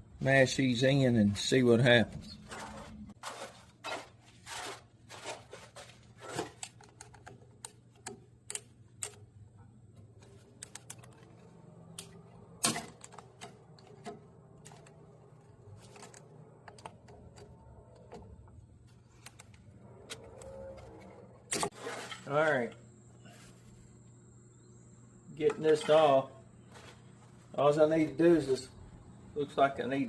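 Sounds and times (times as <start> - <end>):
faint steady hum: 5.8 - 30.0.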